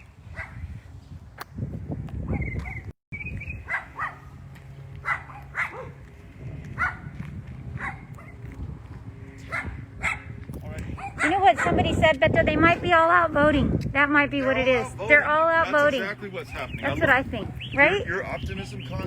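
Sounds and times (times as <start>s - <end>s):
dog barking: 0.3s - 0.6s, 3.6s - 4.4s, 5.0s - 6.0s, 6.8s - 7.1s, 7.8s - 8.4s, 9.4s - 10.3s, 10.9s - 12.0s.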